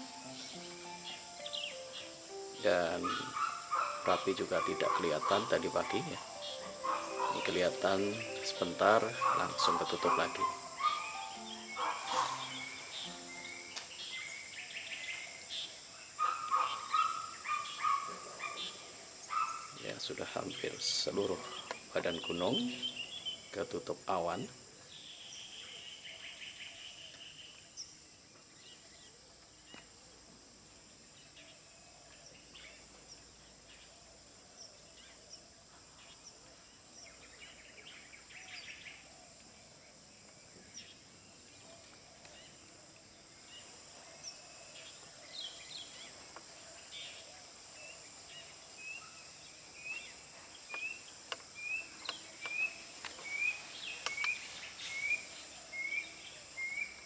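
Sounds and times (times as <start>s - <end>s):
bird repeating rising note: 0.0s - 14.4s, 22.2s - 23.5s
birds chirping: 0.0s - 29.9s, 31.2s - 57.0s
insects droning: 0.0s - 57.0s.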